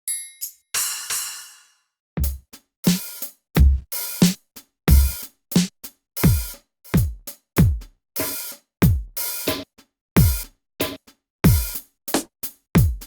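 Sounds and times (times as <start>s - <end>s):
dry drum machine hits: 2.2s - 9.6s, 10.2s - 13.0s
deep kick drum hits: 3.6s - 3.8s, 4.9s - 5.2s.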